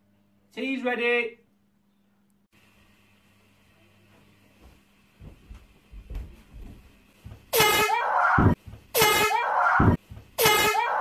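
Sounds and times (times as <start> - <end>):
soft thuds: 4.6 - 7.6
air horn blasts: 7.5 - 8.3, 8.9 - 11.0.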